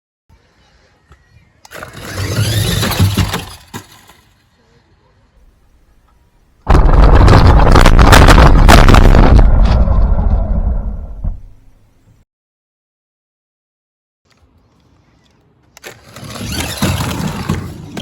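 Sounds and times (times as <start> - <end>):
toy car rumbling down slide: 1.7 - 4.3, 15.8 - 18.0.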